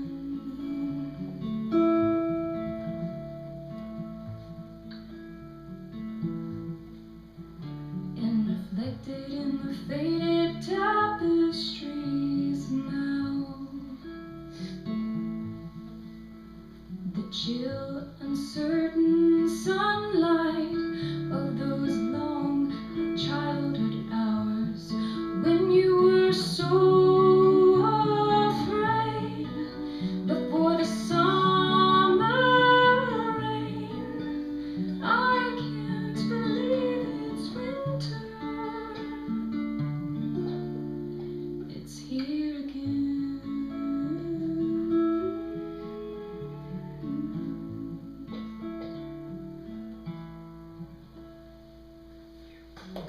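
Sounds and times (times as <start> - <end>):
woman singing: 0.0 - 1.7, 8.2 - 14.9, 16.9 - 39.9, 40.7 - 48.7
acoustic guitar playing folk song: 0.0 - 53.0.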